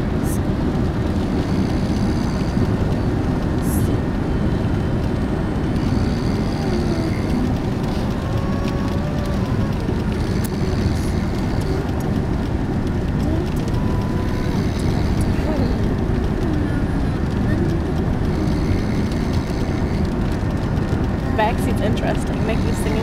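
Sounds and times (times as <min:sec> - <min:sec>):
road and engine rumble in car: 0:00.0 - 0:23.0
faint singing voice: 0:05.4 - 0:23.0.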